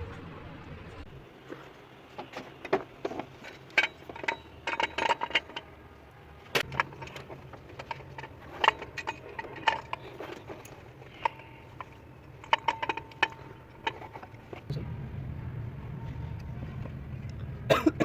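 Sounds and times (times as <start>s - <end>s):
hand tools clinking on metal: 2.2s - 5.7s, 6.6s - 14.6s.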